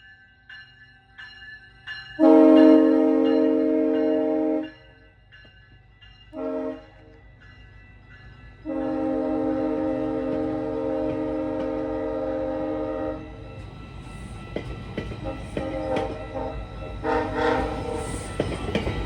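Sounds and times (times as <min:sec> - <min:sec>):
low train rumble: 0:00.0 - 0:19.0
train air horn chord: 0:02.2 - 0:04.8, 0:06.4 - 0:07.0, 0:08.6 - 0:13.3, 0:15.2 - 0:18.4.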